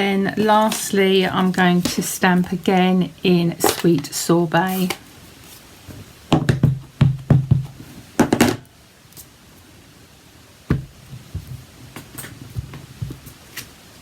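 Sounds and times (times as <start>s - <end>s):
stamp knocking on desk: 6.4s - 8.6s.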